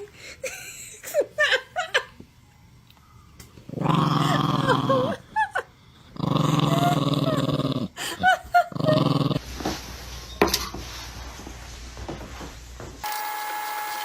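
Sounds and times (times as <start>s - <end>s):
dog growling: 3.7s - 5.2s, 6.0s - 8.0s, 8.6s - 9.4s.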